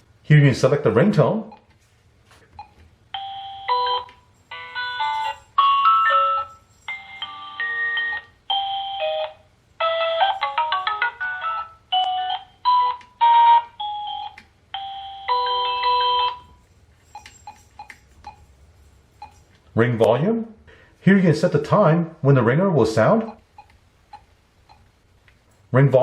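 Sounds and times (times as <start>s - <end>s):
electronic ringtone melodies: 3.1s - 16.6s.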